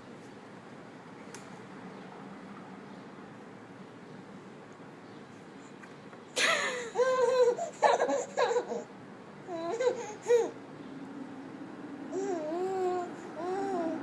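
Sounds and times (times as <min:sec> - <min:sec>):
baby laughing and squealing: 0:06.4 - 0:08.9, 0:09.5 - 0:10.6.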